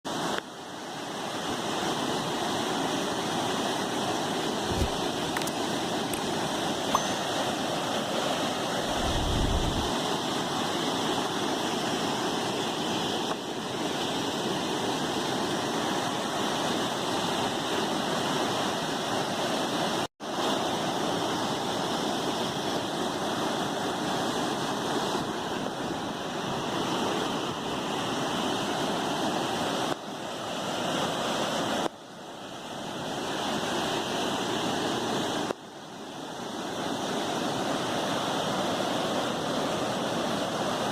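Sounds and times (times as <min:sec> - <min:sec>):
waterfall rushing: 0:00.1 - 0:31.8.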